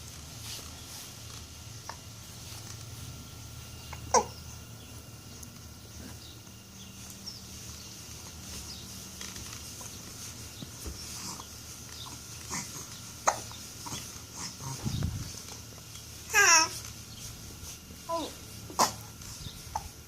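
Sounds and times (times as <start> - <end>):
baby grunting and squeaking: 4.1 - 4.4, 12.5 - 14.8, 16.3 - 16.7.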